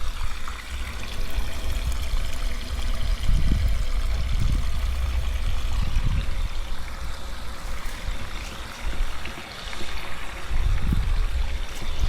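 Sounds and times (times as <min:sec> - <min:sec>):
hose water splashing on plants: 0:00.0 - 0:12.0
low microphone rumble: 0:00.0 - 0:12.0.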